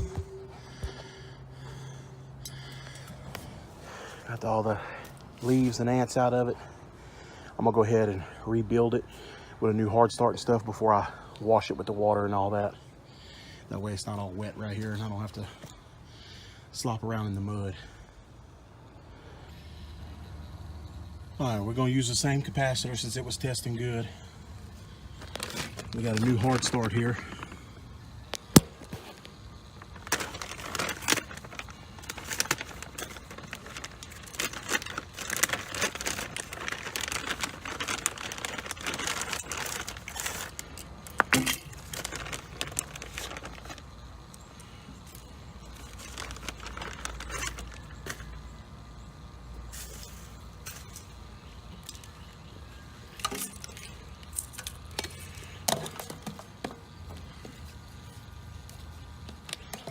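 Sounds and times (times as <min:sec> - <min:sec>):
plastic packaging crinkling: 0:24.6 - 0:48.6, 0:53.1 - 0:56.6.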